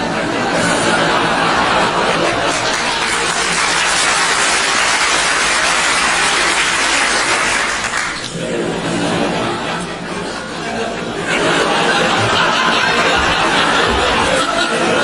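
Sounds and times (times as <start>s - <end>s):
audience chatter: 0.0s - 15.0s
audience applauding and cheering: 1.0s - 8.3s, 11.5s - 15.0s.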